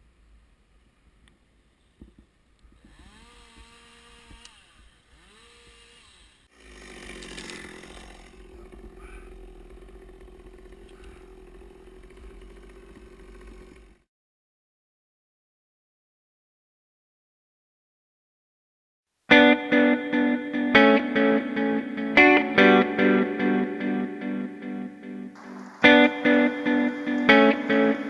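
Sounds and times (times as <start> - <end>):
chainsaw revving: 2.8 - 14.0, 25.4 - 28.0.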